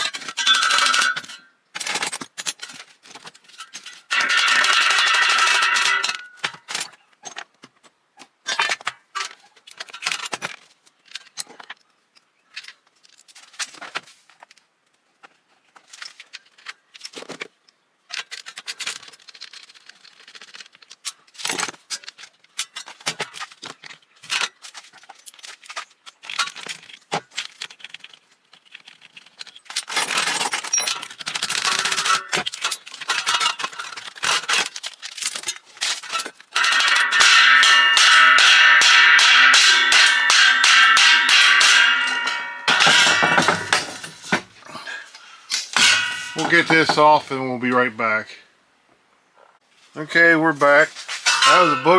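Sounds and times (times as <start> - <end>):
metal clinking and rattling: 0.4 - 1.4, 3.8 - 6.6, 29.9 - 34.7, 35.9 - 44.6, 45.6 - 47.3, 51.1 - 51.9.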